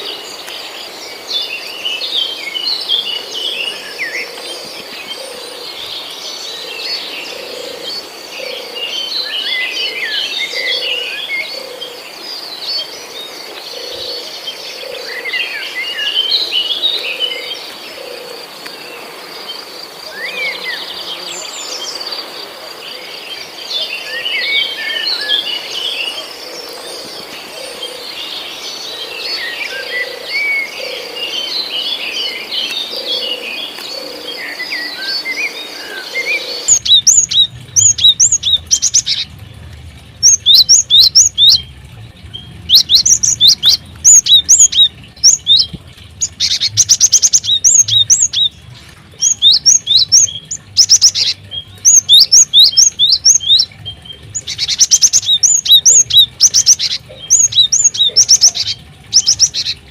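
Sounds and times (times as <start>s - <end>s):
birds chirping: 0.0s - 59.9s
low hum: 36.5s - 55.4s.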